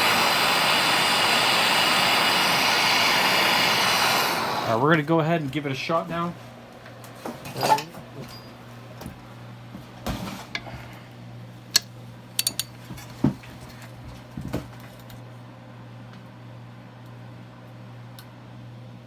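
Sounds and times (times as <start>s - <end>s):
steady low hum: 0.0s - 19.0s
metal clinks of socket wrench: 12.4s - 12.7s.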